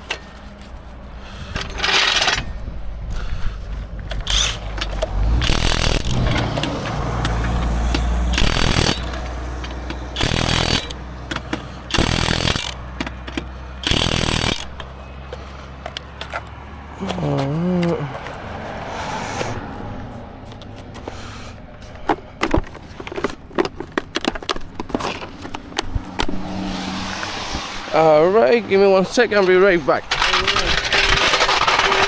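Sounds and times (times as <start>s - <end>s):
impact wrench bursts: 1.5s - 2.5s, 4.1s - 15.0s, 29.9s - 32.0s.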